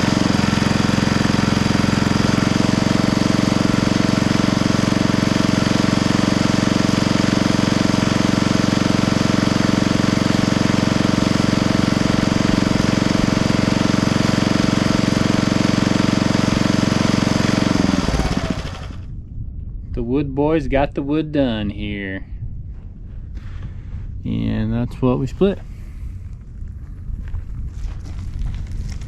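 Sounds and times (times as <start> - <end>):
log splitter engine running: 0.0 - 19.1.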